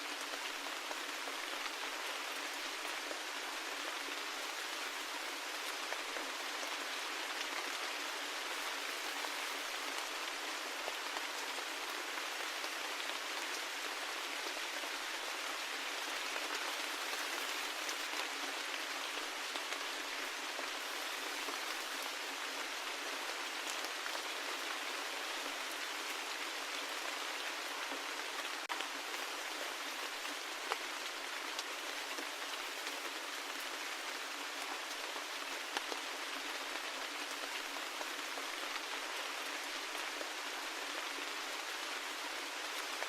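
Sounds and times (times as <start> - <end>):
steady rain falling: 0.0 - 43.0.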